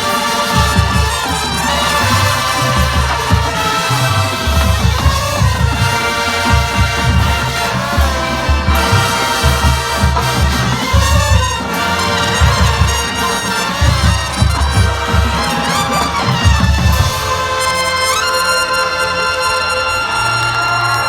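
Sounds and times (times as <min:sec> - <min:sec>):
brass band music: 0:00.0 - 0:21.0.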